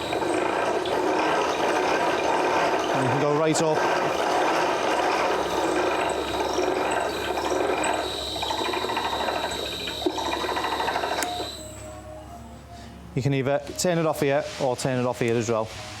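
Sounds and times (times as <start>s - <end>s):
high whine: 0.0s - 3.2s, 3.8s - 12.8s
floor grinder running: 0.0s - 11.9s.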